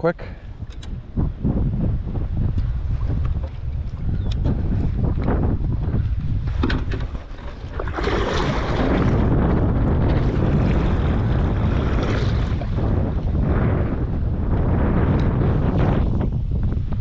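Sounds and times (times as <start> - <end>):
wind buffeting microphone: 0.0 - 17.0
water rushing and slapping: 2.8 - 16.3.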